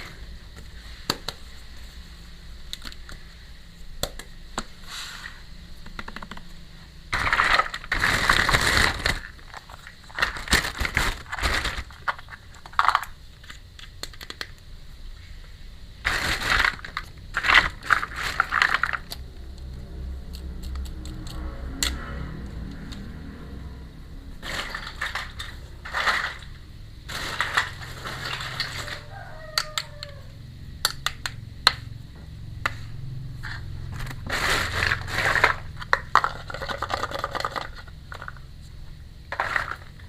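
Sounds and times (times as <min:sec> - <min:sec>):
packaging crinkling and rustling: 0:07.1 - 0:13.6, 0:16.0 - 0:19.2, 0:27.1 - 0:29.0, 0:34.0 - 0:38.4.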